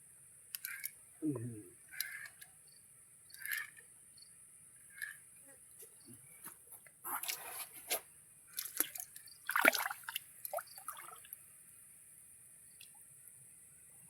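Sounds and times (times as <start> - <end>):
water splashing and dripping: 8.6 - 11.4.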